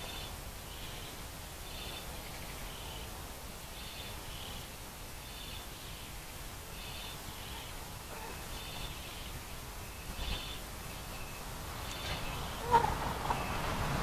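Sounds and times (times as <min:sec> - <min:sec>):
low background noise: 0:00.0 - 0:14.0.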